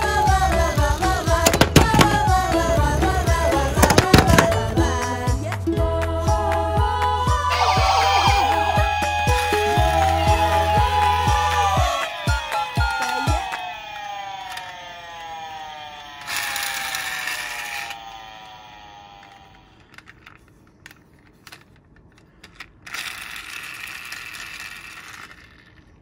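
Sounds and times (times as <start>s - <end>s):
toy cars rolling on plastic: 0.0s - 5.2s, 11.0s - 26.0s
falling tone: 7.5s - 20.0s
toys clicking when handled: 12.6s - 14.8s, 16.2s - 26.0s.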